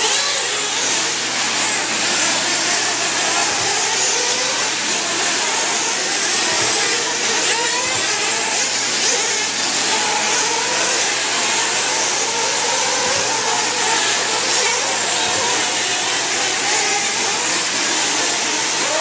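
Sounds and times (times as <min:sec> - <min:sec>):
small model car engines buzzing: 0:00.0 - 0:19.0.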